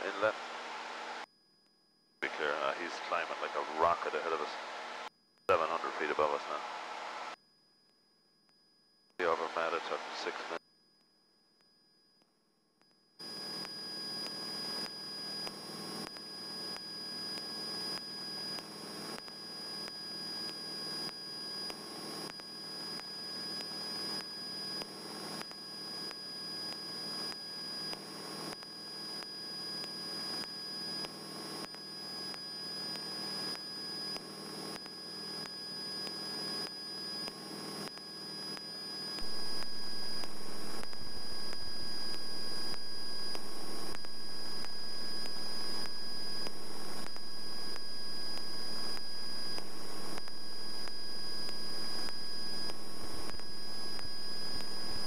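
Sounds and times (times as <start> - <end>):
high electrical whine: 0.0 - 1.3, 2.2 - 7.4, 9.2 - 10.6, 13.2 - 55.0.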